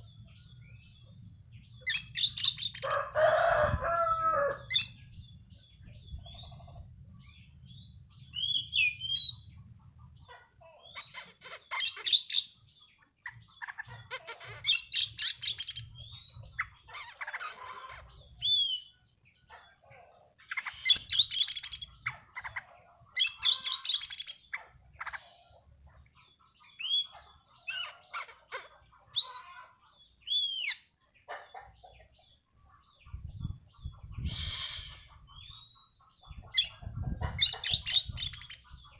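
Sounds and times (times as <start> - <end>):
songbird singing buzzy trills: 10.8 - 19.5, 20.3 - 38.9.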